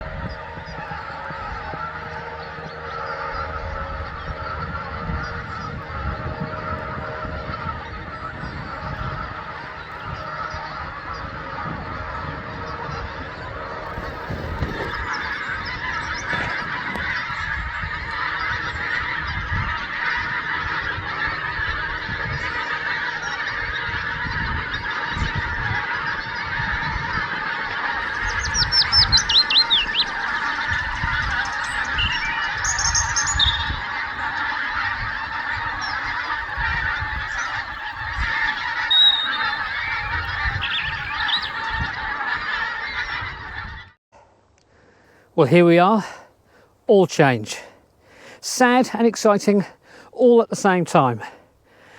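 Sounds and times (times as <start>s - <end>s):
geese honking: 0.0s - 44.0s, 45.1s - 51.9s
small bird chirping: 28.2s - 30.2s, 31.5s - 33.7s, 38.9s - 39.6s.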